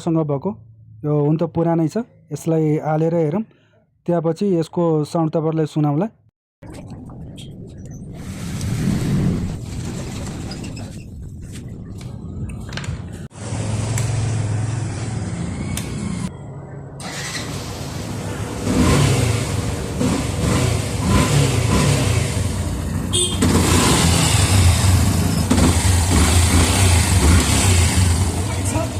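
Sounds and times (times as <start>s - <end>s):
motorcycle engine running: 18.0s - 28.9s.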